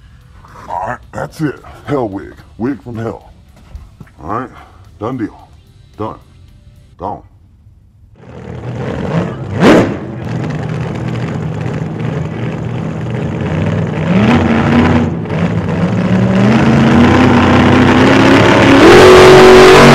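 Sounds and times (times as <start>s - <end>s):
pickup truck engine accelerating: 8.2s - 19.9s.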